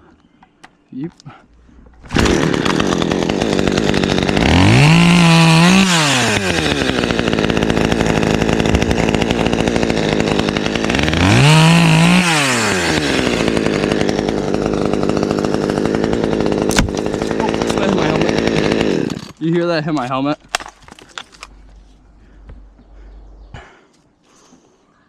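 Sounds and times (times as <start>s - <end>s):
chainsaw idling and revving: 2.0s - 20.2s.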